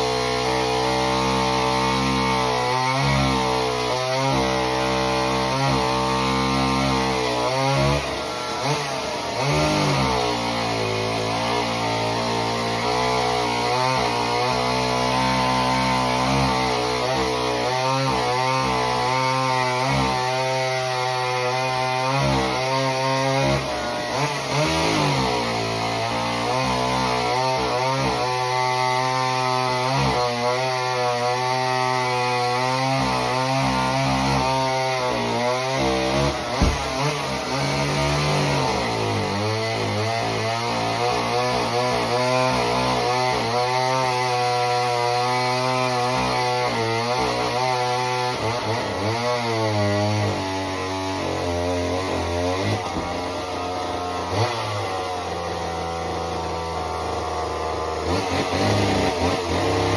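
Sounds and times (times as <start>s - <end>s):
chainsaw cutting a log: 0.0s - 59.9s
sharp knock: 36.5s - 37.0s.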